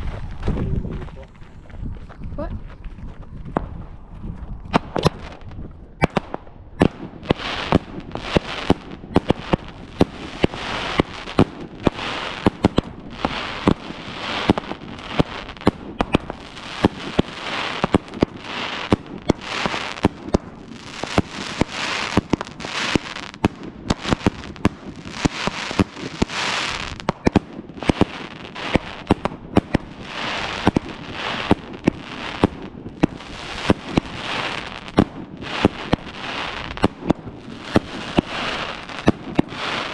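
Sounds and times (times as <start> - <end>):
firework hissing: 7.3 - 27.2, 29.9 - 39.9.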